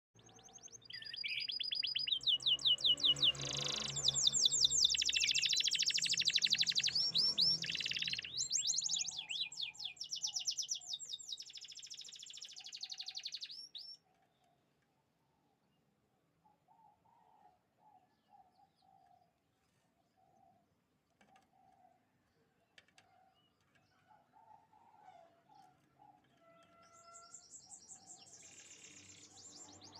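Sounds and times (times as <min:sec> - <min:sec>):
canary singing trills: 0:00.2 - 0:14.2, 0:25.6 - 0:29.9.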